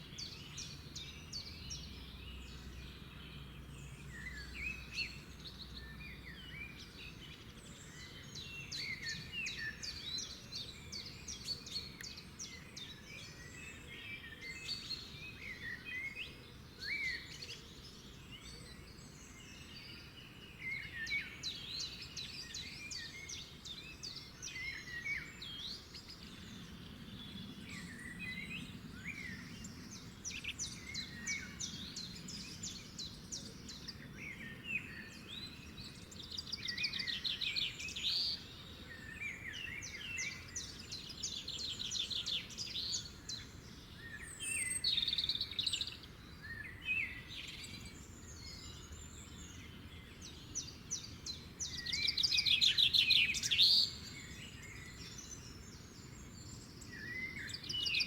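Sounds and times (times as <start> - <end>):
songbirds singing and trilling: 0.0 - 58.0.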